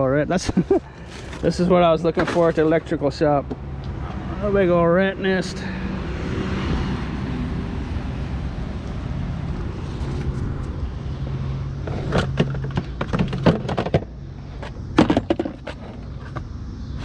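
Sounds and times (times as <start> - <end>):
scrap metal clattering: 1.0 - 2.9.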